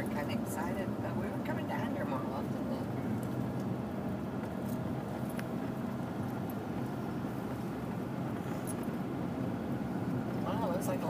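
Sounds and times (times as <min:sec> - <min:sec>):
diesel engine rumbling: 0:00.0 - 0:11.0.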